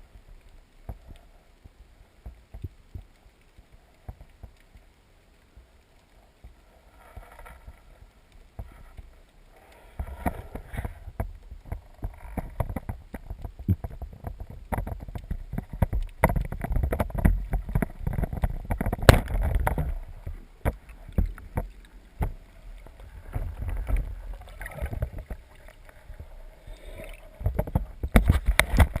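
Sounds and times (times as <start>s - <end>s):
water splashing around boat: 6.4s - 29.0s.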